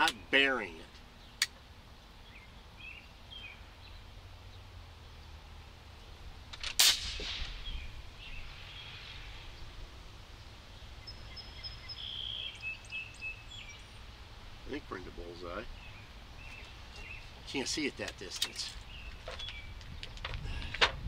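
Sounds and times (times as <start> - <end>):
air rifle shot: 6.6 - 7.9.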